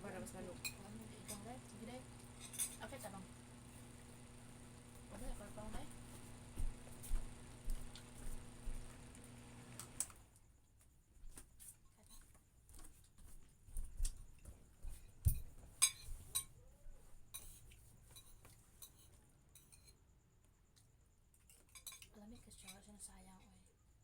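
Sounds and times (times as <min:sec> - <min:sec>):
cutlery clinking on plates: 0:02.4 - 0:02.8, 0:15.8 - 0:16.6, 0:17.3 - 0:20.0, 0:21.5 - 0:22.8.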